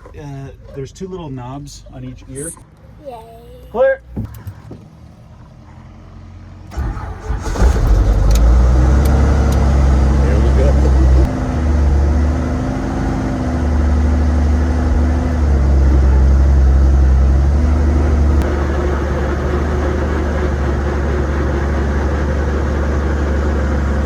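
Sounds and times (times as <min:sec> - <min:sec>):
helicopter engine drone: 0:18.2 - 0:24.0.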